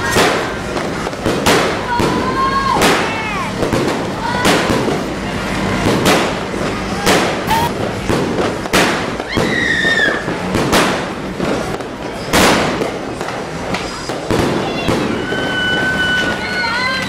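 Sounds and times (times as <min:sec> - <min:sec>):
fireworks bangs: 0:00.0 - 0:16.7
fireworks crackling: 0:00.0 - 0:17.0.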